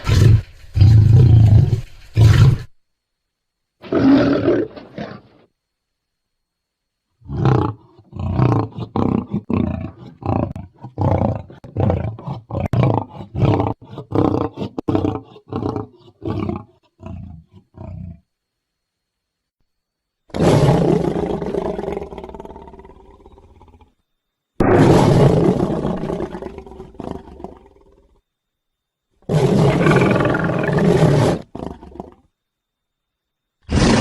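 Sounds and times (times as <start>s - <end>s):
dragon guttural calls: 3.8s - 5.4s, 7.2s - 18.3s, 20.3s - 24.0s, 24.6s - 28.2s, 29.2s - 32.3s, 33.6s - 34.0s
dragon long roar: 24.6s - 27.9s, 29.3s - 32.2s, 33.7s - 34.0s.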